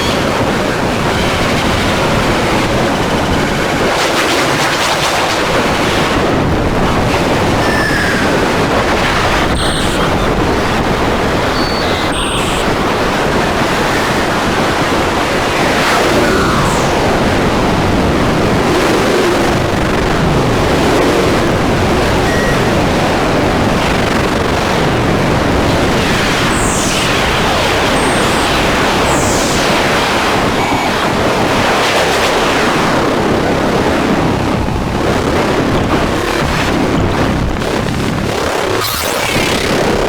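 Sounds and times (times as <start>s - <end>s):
high falling squeals: 7.5s - 10.6s, 11.4s - 13.0s, 15.5s - 17.7s, 20.9s - 23.4s, 25.6s - 31.2s
harsh noise music: 7.6s - 10.5s, 11.6s - 12.7s.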